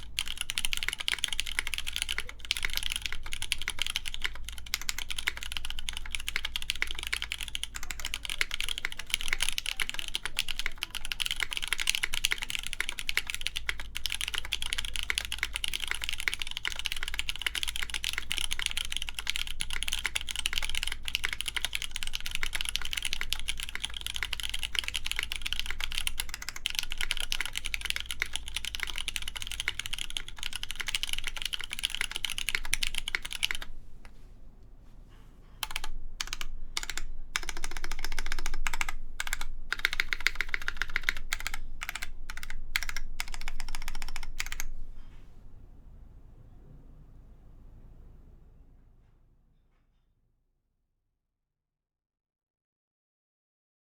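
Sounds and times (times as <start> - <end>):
mechanical keyboard typing: 0.0 - 33.7, 35.6 - 44.7.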